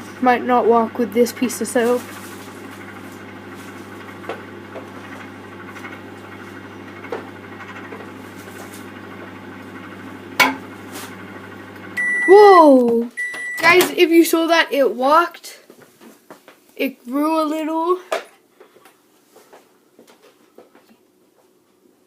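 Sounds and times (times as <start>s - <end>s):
microwave oven humming: 0.0s - 15.3s.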